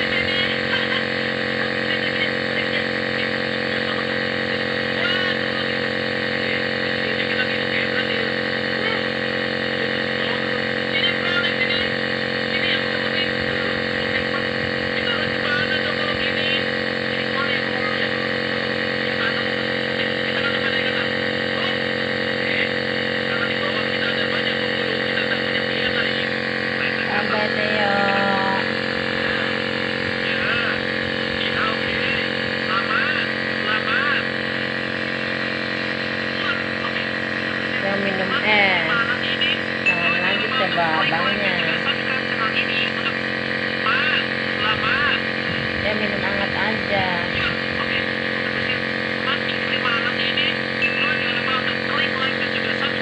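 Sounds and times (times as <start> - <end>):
steady machine hum: 0.0 - 53.0
faint voices: 23.2 - 35.5, 43.8 - 51.6.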